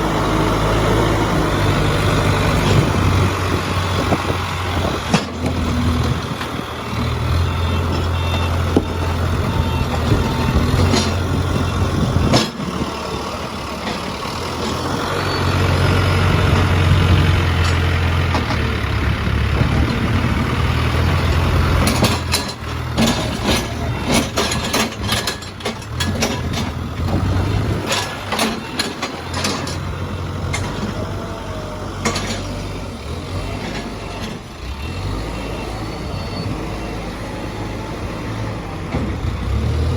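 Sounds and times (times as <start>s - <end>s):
diesel engine running: 0.0s - 39.9s
metallic clanks and knocks: 5.0s - 6.6s, 9.9s - 11.5s, 12.2s - 12.9s, 21.1s - 31.0s, 32.0s - 32.7s.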